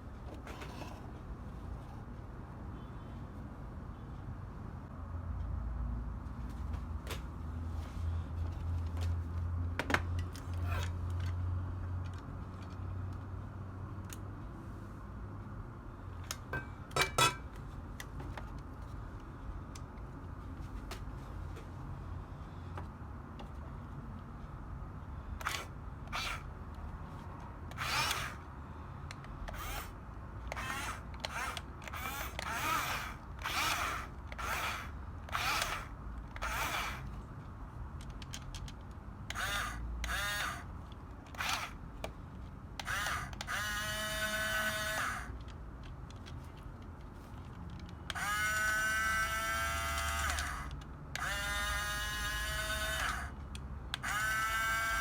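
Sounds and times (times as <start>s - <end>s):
small electric motors whirring: 10.4s - 11.3s, 25.4s - 26.5s, 27.7s - 28.5s, 29.4s - 37.2s, 39.3s - 40.7s, 41.3s - 41.8s, 42.8s - 45.4s, 48.1s - 53.4s, 54.0s - 55.0s.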